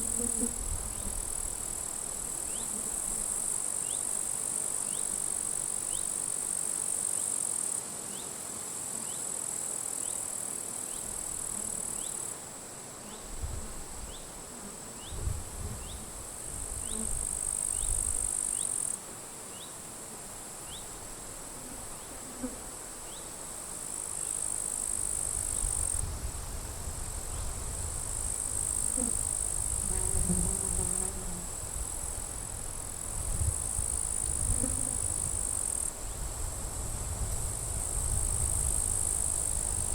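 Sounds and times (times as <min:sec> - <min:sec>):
wind gusts on microphone: 0:00.1 - 0:01.7, 0:13.3 - 0:14.1, 0:15.1 - 0:18.3, 0:25.1 - 0:39.9
grasshoppers stridulating: 0:15.8 - 0:20.0, 0:20.6 - 0:26.1, 0:27.8 - 0:39.9.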